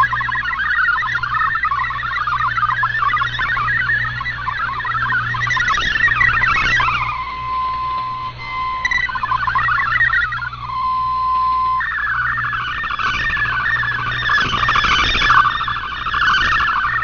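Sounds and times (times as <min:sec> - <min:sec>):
low hum: 0:00.0 - 0:17.0
warbling digital data tones: 0:00.0 - 0:17.0
single steady tone: 0:02.2 - 0:14.7.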